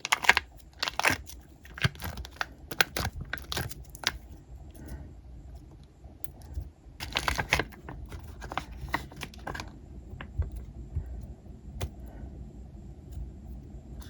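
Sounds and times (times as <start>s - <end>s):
hands handling squishy toys: 0.0s - 4.3s, 7.0s - 10.4s.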